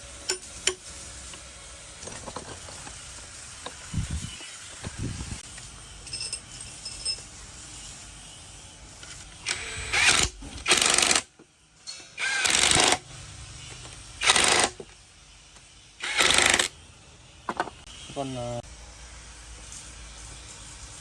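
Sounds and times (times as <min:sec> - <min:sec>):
pneumatic impact wrench rattling: 0:08.9 - 0:15.0, 0:16.0 - 0:16.8.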